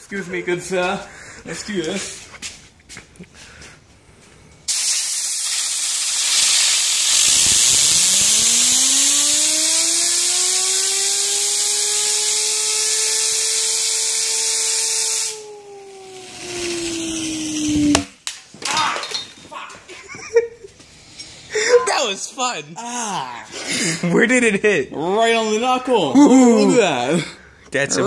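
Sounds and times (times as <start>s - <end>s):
compressed air hissing: 4.6s - 18.2s, 20.8s - 21.8s
fidget spinner whine: 6.2s - 18.2s.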